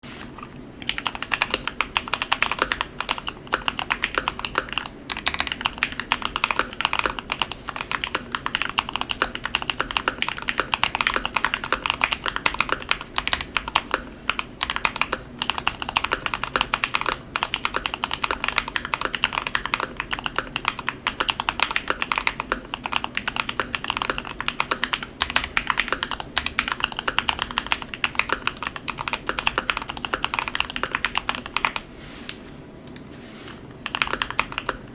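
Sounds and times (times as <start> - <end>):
fast typing on mechanical keyboard: 0.8 - 31.8, 33.8 - 34.9.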